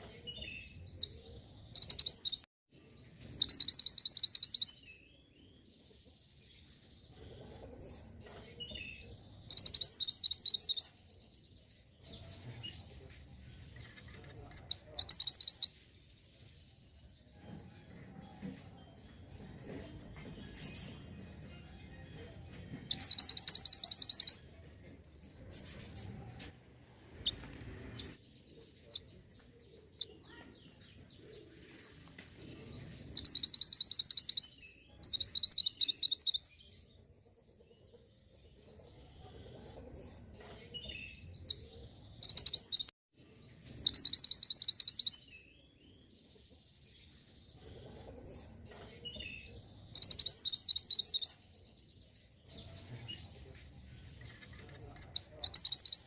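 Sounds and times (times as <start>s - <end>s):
soft bird chirps: 0.0s - 17.6s, 22.8s - 24.6s, 25.3s - 37.0s, 37.6s - 56.0s.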